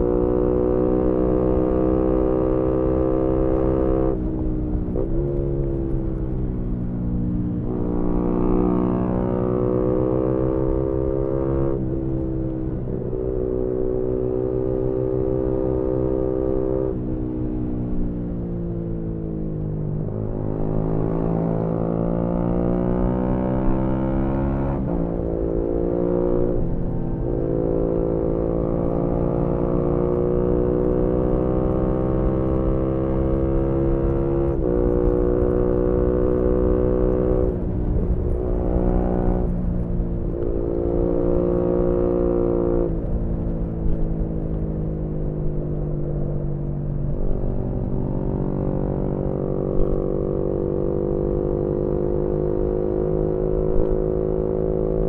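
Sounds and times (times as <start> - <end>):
motorcycle engine revving: 20.4 - 45.6, 47.7 - 55.0
wind rushing on microphone: 34.6 - 50.0.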